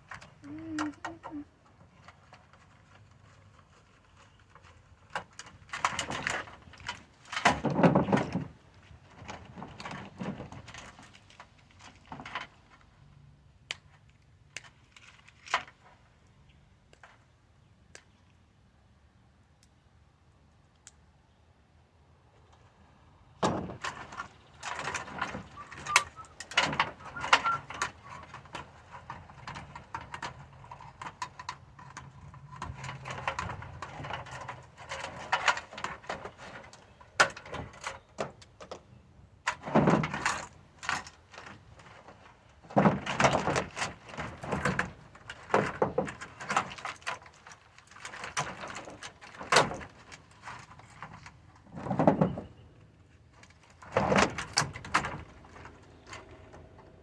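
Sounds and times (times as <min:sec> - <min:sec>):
metal parts clattering: 0:23.4 - 0:38.2
scrap parts and tools handled: 0:23.4 - 0:38.4.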